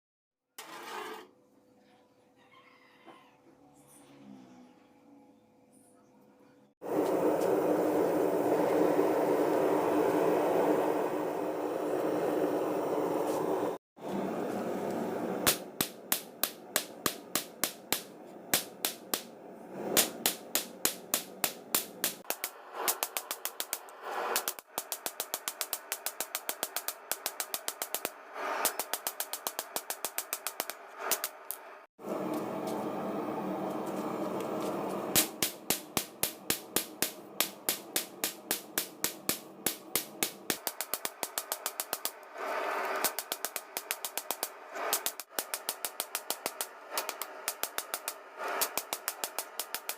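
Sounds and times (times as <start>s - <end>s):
steady mechanical hum: 6.8s - 15.5s, 31.0s - 49.9s
steady rushing noise: 15.4s - 31.5s, 35.2s - 49.9s.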